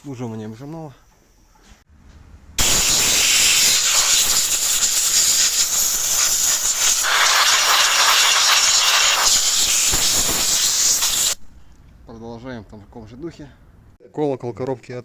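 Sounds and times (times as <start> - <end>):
pressurised spray hissing: 2.6 - 11.8.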